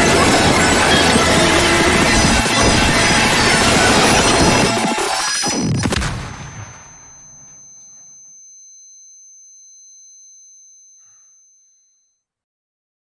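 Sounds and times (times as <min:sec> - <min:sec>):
loud crash: 0:00.0 - 0:08.1
high-pitched ringing tone: 0:00.0 - 0:12.3.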